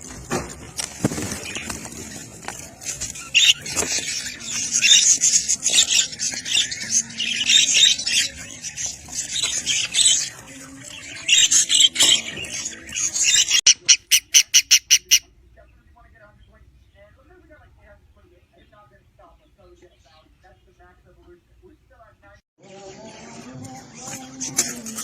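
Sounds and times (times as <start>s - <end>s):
budgerigars chattering and squawking: 1.1s - 21.0s
sharp repeated chirps: 13.6s - 15.2s.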